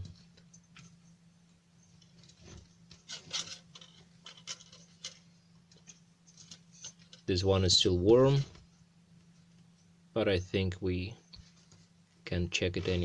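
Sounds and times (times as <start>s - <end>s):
steady low hum: 0.0s - 13.0s
tools tapping and scraping: 2.0s - 7.3s.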